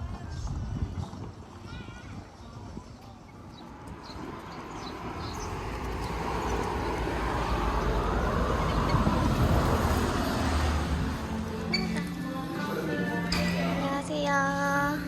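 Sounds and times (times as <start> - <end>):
vehicle passing by: 3.6 - 12.9.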